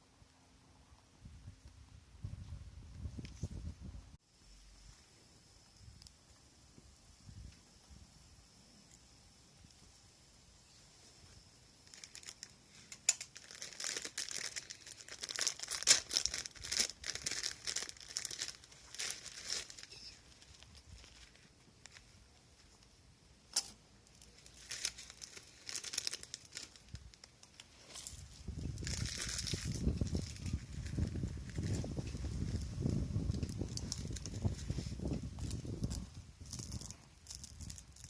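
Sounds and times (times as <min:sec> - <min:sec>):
plastic wrapper crinkling: 0:11.8 - 0:22.8, 0:23.5 - 0:38.0.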